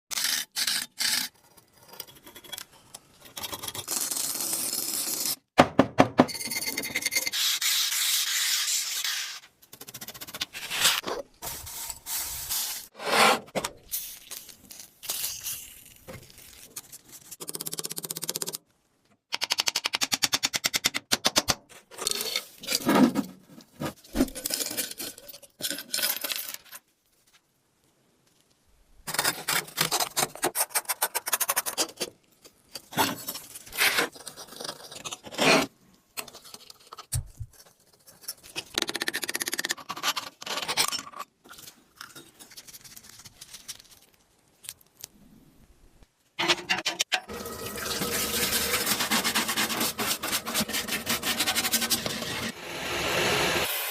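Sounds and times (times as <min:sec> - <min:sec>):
rubbing scraping and sanding: 0:48.0 - 0:52.6.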